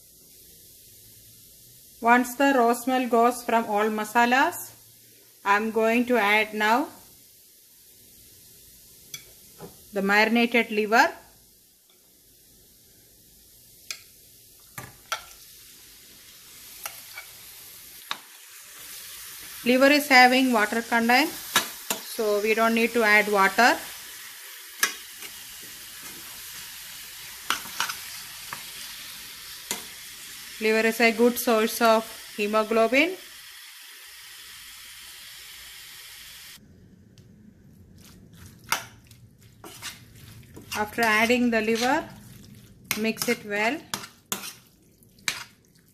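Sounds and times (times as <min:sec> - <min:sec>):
liver sizzling in oil: 0:00.0 - 0:36.6, 0:38.1 - 0:45.9.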